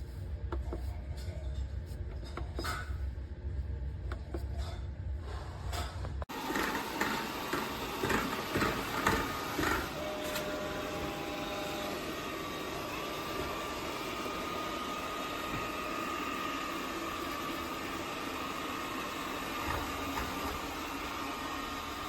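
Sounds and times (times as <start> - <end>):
robot vacuum running: 6.3 - 22.0.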